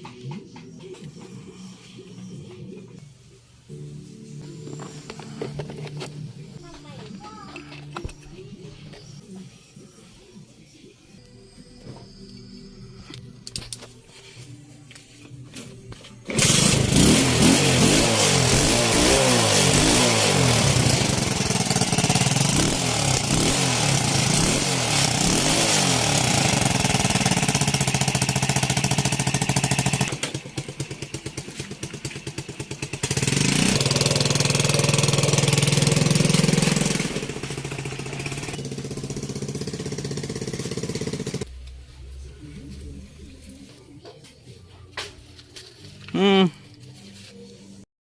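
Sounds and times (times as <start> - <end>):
small petrol engine revving: 16.2 - 41.5.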